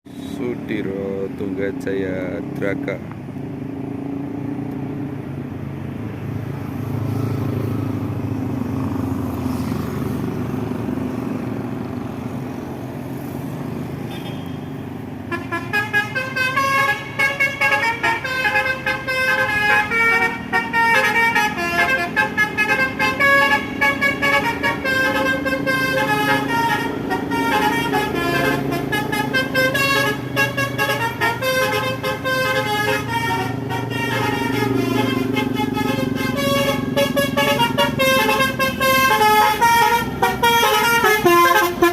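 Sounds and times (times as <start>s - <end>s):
bus engine running: 15.0s - 41.9s
multi-tone horn melody: 15.3s - 41.9s.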